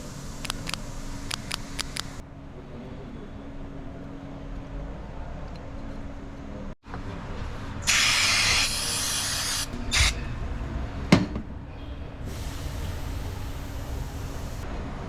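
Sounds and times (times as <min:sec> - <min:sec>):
aerosol spray bursts: 0:07.9 - 0:10.1.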